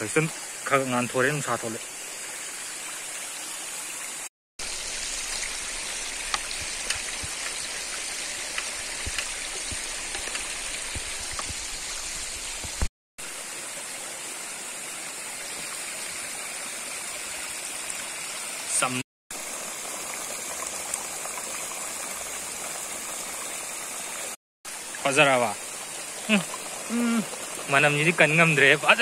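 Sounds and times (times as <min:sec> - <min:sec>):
stream water rushing: 0:00.0 - 0:29.0
water splashes and drips: 0:00.1 - 0:29.0.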